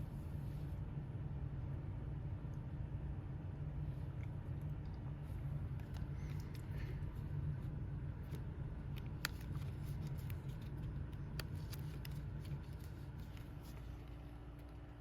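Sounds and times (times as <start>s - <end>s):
steady low hum: 0.0s - 15.0s
card sliding into plastic pocket: 8.3s - 14.2s.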